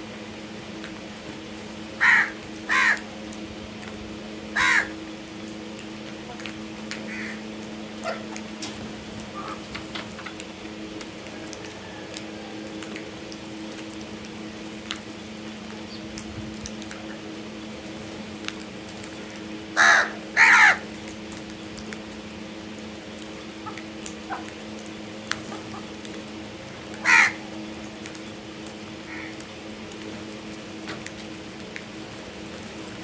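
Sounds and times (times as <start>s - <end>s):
crow cawing: 2.0s - 3.0s, 4.6s - 5.0s, 7.1s - 7.4s, 19.8s - 20.8s, 27.0s - 27.4s, 29.1s - 29.4s.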